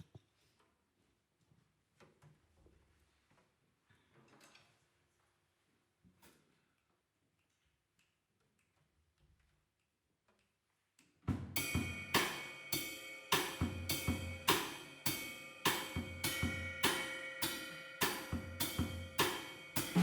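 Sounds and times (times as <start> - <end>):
jazz drum kit playing: 11.4 - 20.0.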